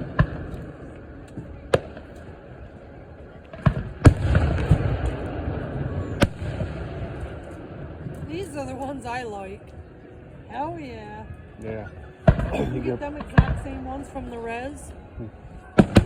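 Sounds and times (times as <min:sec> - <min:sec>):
fireworks bangs: 0:03.5 - 0:08.2.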